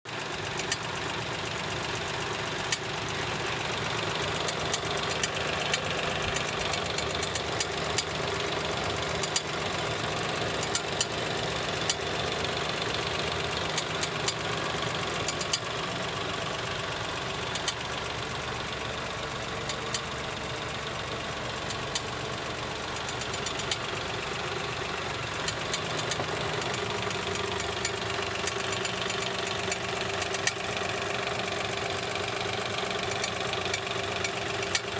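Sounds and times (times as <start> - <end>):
car engine idling: 0.1 - 34.9
sharp knocking clicks: 4.1 - 8.3, 10.5 - 11.2, 15.1 - 15.7, 17.5 - 17.8, 19.6 - 20.2, 21.6 - 22.2, 22.9 - 24.5, 25.2 - 34.9.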